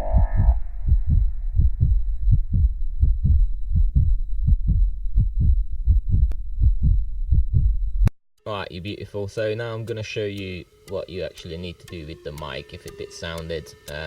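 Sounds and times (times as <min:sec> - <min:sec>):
deep bass thump: 0:00.0 - 0:08.1.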